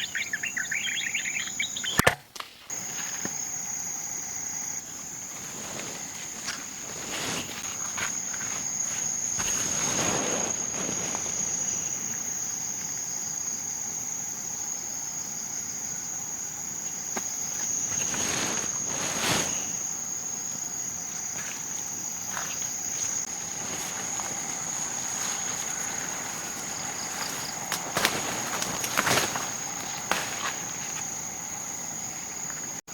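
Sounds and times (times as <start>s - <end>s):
insects droning: 0.0s - 32.9s
swishing rustling noises: 5.1s - 12.3s, 17.4s - 20.0s, 21.2s - 31.1s.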